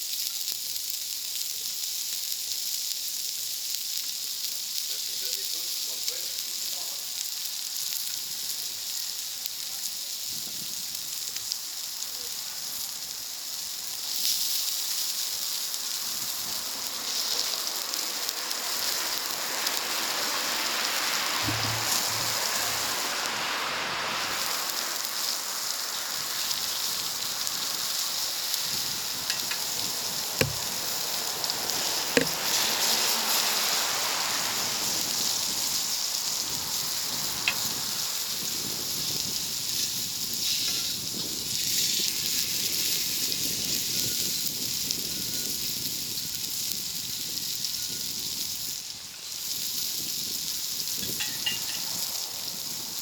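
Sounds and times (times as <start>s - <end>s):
food sizzling on a hot plate: 0.0s - 53.0s
soft knocks: 21.4s - 22.9s, 30.4s - 30.8s, 32.2s - 32.4s.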